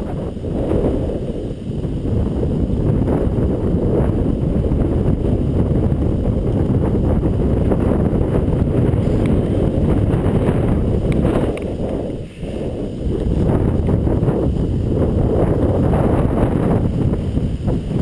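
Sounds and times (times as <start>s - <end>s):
wind buffeting microphone: 0.0s - 18.0s.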